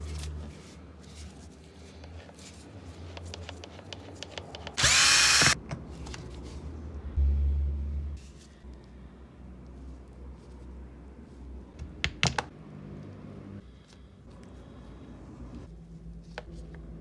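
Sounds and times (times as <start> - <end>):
angle grinder motor whining: 4.8 - 5.6.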